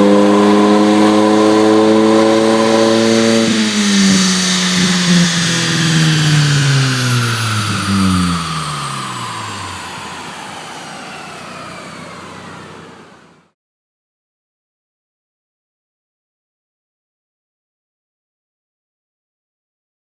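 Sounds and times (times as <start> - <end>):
car engine and exhaust revs dropping: 0.0 - 13.5.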